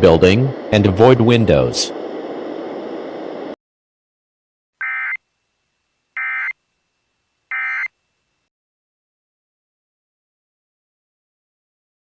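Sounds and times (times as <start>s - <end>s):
screechy digital data tones: 7.5s - 7.9s.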